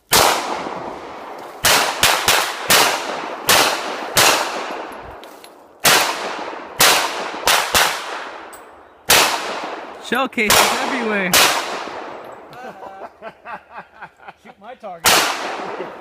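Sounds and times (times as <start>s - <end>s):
echoing gunshots: 0.0s - 12.5s, 15.0s - 16.0s.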